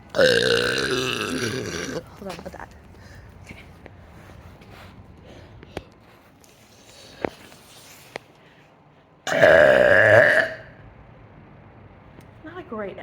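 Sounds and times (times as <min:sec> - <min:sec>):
person burping loudly: 0:00.1 - 0:02.1, 0:09.3 - 0:10.8.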